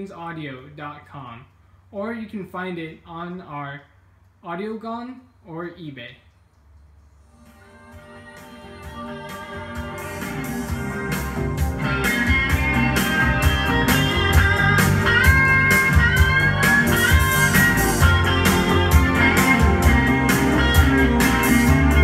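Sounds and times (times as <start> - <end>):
guitar music: 7.4 - 22.0
steady drum beat: 8.8 - 22.0.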